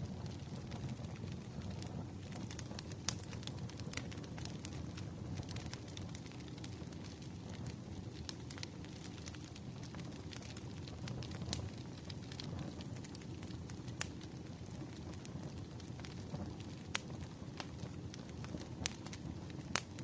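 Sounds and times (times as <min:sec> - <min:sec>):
logs crackling and popping: 0:00.0 - 0:20.0
wood fire burning: 0:00.0 - 0:20.0.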